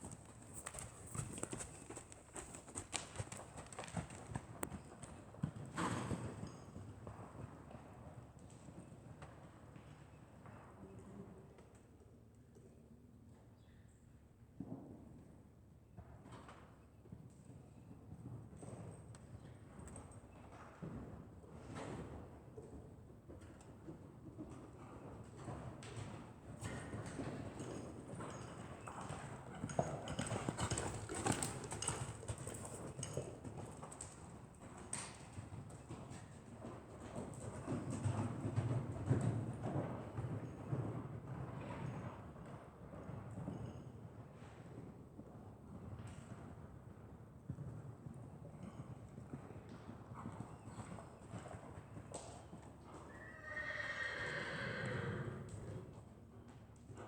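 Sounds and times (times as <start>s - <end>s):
faint hoof clicks: 0.0s - 4.8s, 26.7s - 35.4s
horse hooves clip-clopping: 0.0s - 10.8s, 16.0s - 57.0s
horse whinnying: 53.1s - 55.4s.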